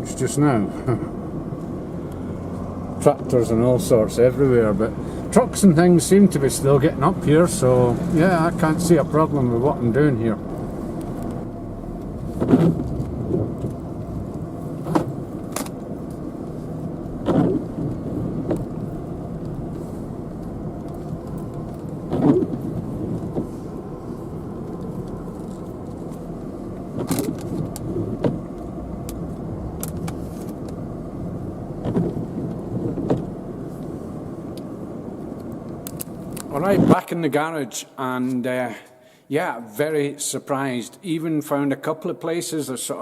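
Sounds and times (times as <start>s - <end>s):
car engine and road noise: 0.0s - 38.2s
short thump: 12.3s - 13.8s.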